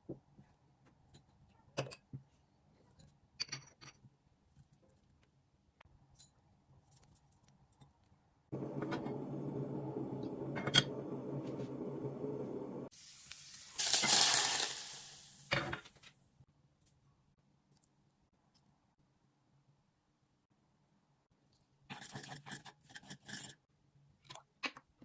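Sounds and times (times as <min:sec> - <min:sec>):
kitchen utensils and dishes clinking: 0:13.8 - 0:15.9.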